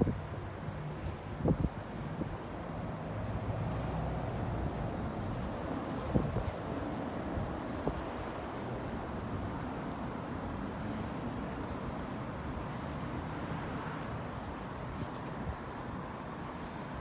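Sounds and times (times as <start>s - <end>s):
city road traffic hum: 0.0s - 17.0s.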